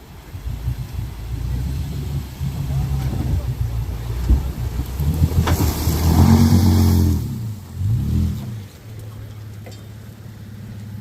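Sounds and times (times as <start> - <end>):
pickup engine revving: 0.2 - 11.0.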